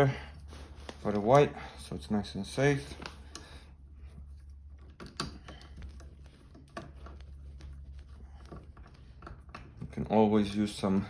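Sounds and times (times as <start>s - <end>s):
wires clicking and scraping: 2.4s - 11.0s.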